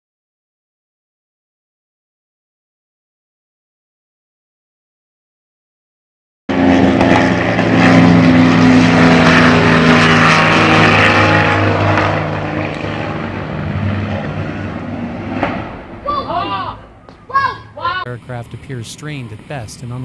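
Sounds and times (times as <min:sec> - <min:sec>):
propeller airplane engine droning: 0:06.5 - 0:20.0.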